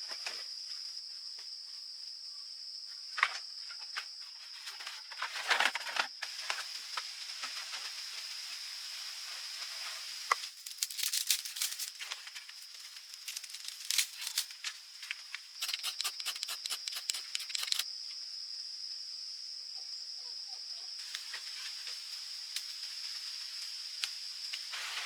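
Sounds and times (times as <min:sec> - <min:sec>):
sharp crackling and rustling: 0:04.7 - 0:17.9.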